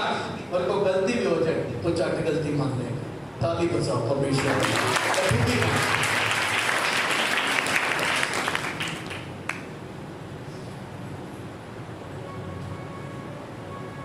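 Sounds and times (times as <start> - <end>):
congregation applauding: 4.4 - 9.7.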